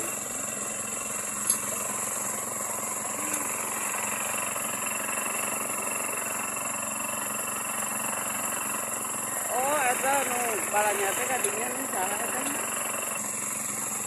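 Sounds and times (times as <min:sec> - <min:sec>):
drilling rig engine running: 0:00.0 - 0:14.0.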